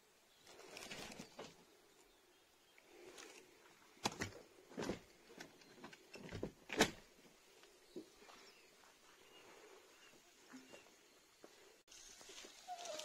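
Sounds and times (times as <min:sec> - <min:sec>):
footsteps on rough path: 0:07.5 - 0:13.0.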